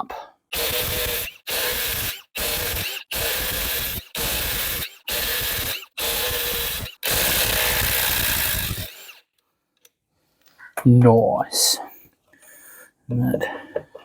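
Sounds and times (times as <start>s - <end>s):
impact wrench hammering: 0.6s - 9.1s.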